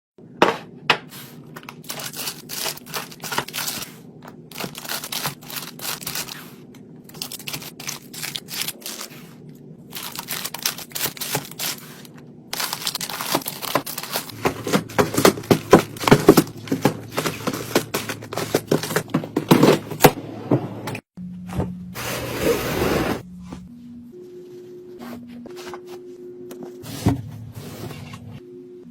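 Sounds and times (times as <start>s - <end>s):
low steady hum: 0.2s - 22.2s, 23.2s - 28.9s
plastic packaging crinkling: 1.6s - 20.0s.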